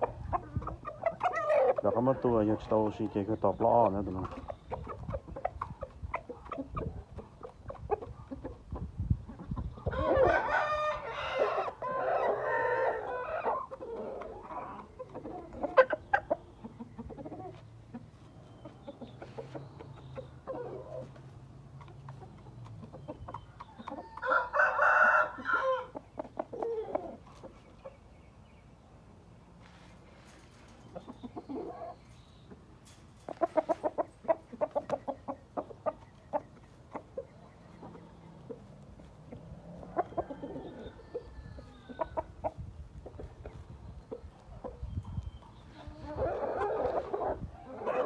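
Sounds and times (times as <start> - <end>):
chickens clucking: 0.0 - 48.0
rooster crowing: 24.1 - 25.9.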